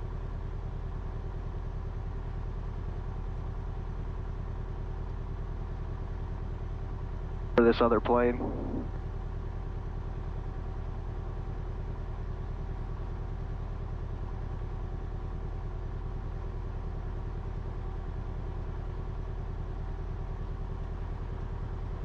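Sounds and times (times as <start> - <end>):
aircraft engine idling: 7.6 - 8.9.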